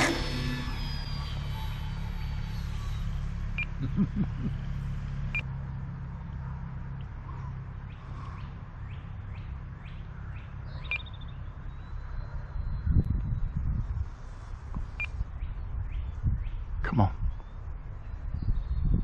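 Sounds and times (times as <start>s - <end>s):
bird chirping: 6.9s - 13.9s, 14.8s - 19.0s
wind buffeting microphone: 11.5s - 19.0s.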